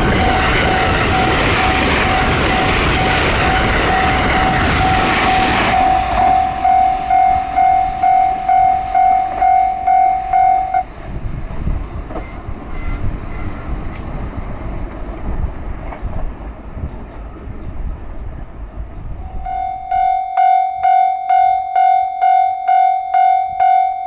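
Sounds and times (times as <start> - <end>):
level-crossing bell ringing: 0.0 - 10.9, 19.2 - 24.0
train rumble: 0.0 - 24.0.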